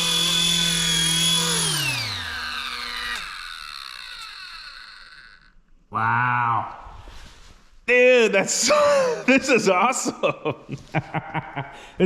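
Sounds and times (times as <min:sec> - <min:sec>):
toy helicopter rotor whining: 0:00.0 - 0:05.7.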